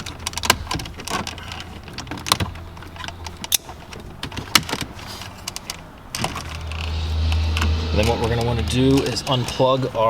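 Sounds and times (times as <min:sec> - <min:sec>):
low steady hum: 0:06.2 - 0:10.0.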